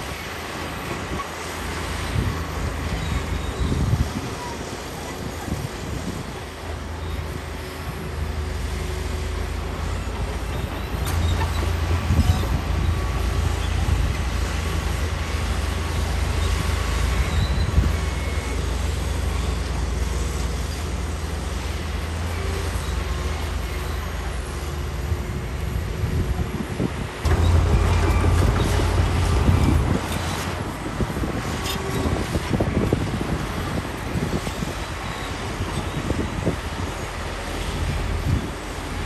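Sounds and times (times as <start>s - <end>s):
diesel machinery engine rumble: 0.0s - 39.0s.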